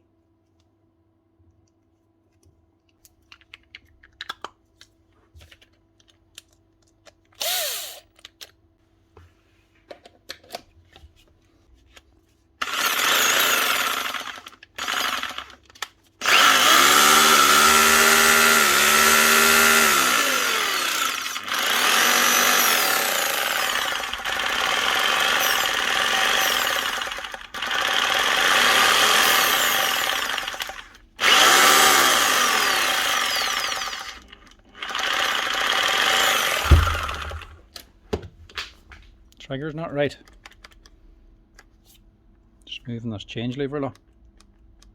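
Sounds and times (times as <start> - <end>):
electric drill motor bursts: 7.4 - 8.0, 12.6 - 15.6, 16.2 - 37.6.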